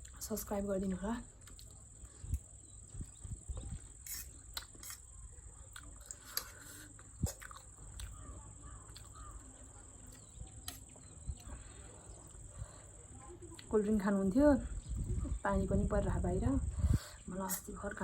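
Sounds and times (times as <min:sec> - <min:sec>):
chewing and handling food: 0:00.0 - 0:14.0.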